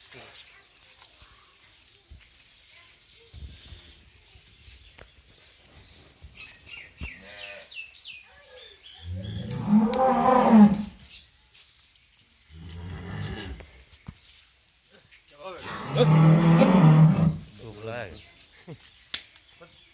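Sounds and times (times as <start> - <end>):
low animal call: 9.1 - 11.0, 15.6 - 17.5.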